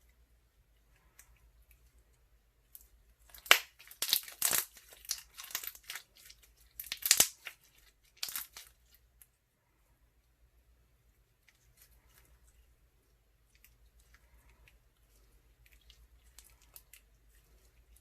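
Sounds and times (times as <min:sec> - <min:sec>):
slime crackling and popping: 0:03.2 - 0:08.8.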